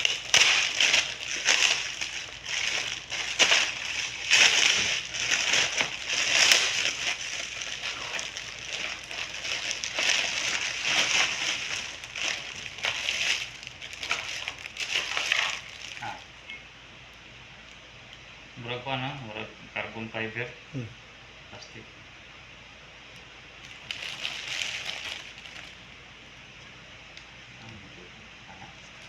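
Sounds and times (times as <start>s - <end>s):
packaging crinkling and rustling: 0.0s - 16.3s, 23.6s - 25.8s.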